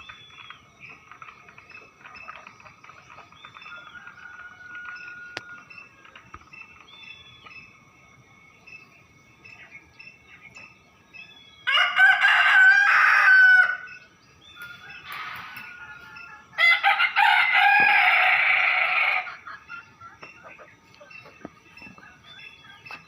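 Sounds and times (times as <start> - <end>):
small birds chirping: 0.0 - 23.0
rooster crowing: 3.6 - 5.9, 11.6 - 14.0, 14.6 - 19.5.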